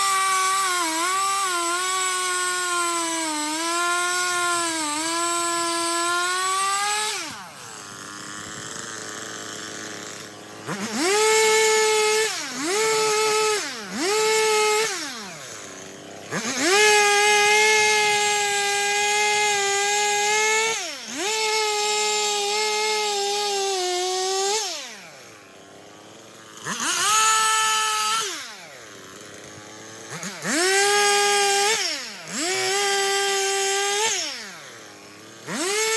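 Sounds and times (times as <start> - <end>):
chainsaw revving: 0.0 - 35.9.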